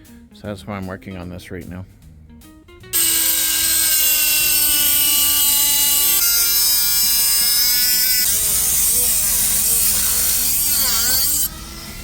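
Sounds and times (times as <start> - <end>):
electric power tool whining: 3.0 - 12.0.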